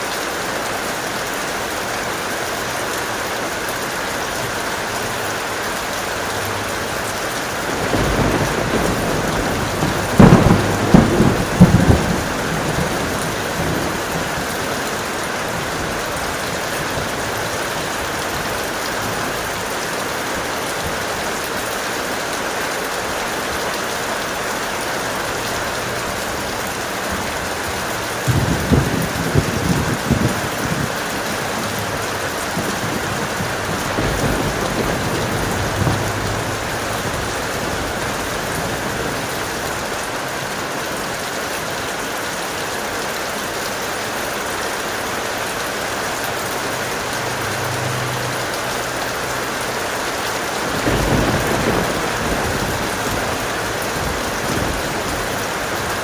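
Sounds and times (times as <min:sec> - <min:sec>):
heavy rain falling: 0:00.0 - 0:56.0
thunder rumbling and cracking: 0:06.6 - 0:21.2, 0:25.4 - 0:40.4, 0:50.1 - 0:56.0.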